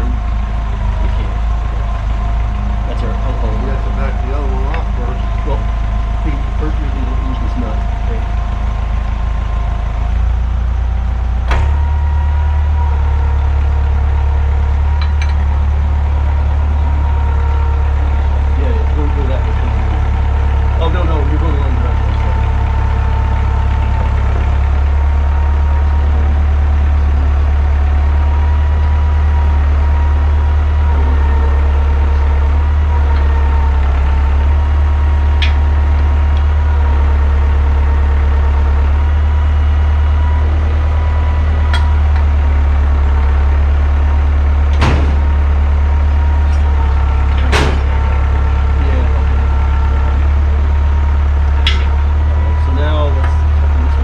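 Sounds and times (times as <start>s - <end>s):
engine idling with deep hum: 0.0s - 54.0s
sharp knocks: 44.7s - 45.8s, 46.5s - 48.3s.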